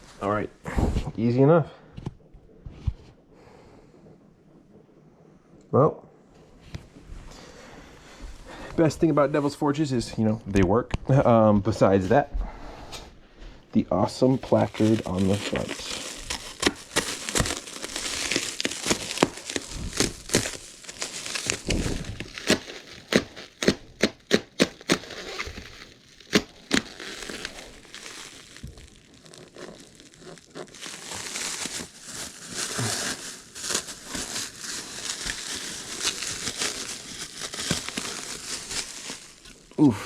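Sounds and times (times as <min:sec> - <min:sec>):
packaging crinkling: 0:14.0 - 0:39.9.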